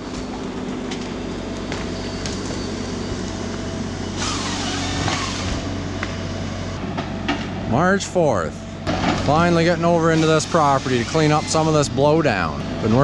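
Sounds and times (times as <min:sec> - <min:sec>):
diesel engine running: 0:00.0 - 0:13.0.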